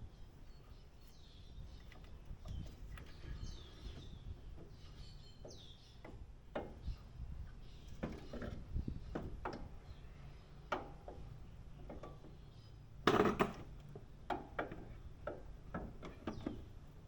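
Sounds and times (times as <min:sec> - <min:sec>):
birds chirping: 0:00.0 - 0:10.8.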